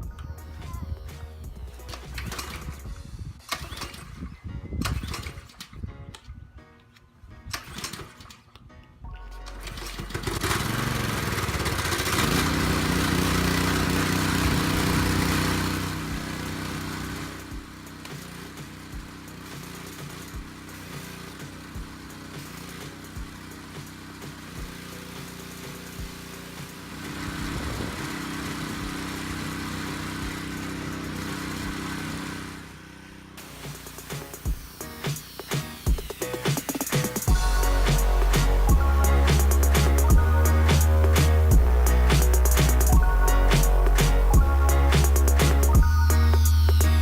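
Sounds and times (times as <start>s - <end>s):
pressure washer engine hum: 0.0s - 5.8s, 7.4s - 8.6s, 9.2s - 47.0s
water spray hissing: 12.2s - 32.6s, 33.4s - 47.0s
broad hiss: 33.4s - 47.0s.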